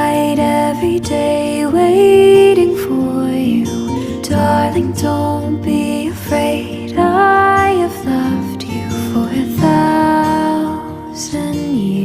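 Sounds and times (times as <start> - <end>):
acoustic guitar: 0.0 - 12.0.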